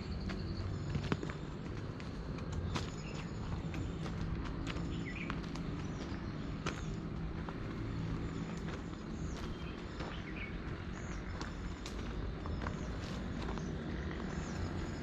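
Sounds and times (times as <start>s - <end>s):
footsteps crunching on trail: 0.0s - 15.0s
bird chirps: 2.5s - 7.1s.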